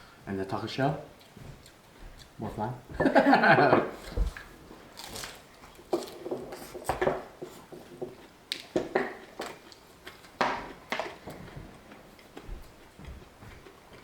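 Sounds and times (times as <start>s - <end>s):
eating crunches and smacks: 4.0s - 14.0s.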